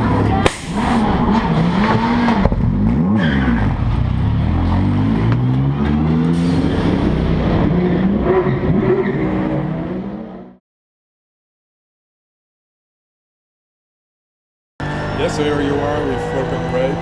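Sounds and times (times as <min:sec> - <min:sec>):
race car engine revving: 0:00.0 - 0:10.6, 0:14.8 - 0:17.0.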